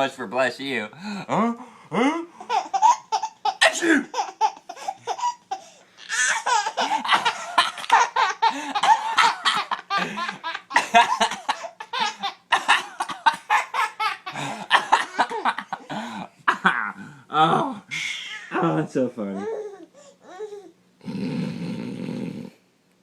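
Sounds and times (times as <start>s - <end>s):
young child laughing: 2.5s - 12.6s
mock sneeze: 3.6s - 4.1s.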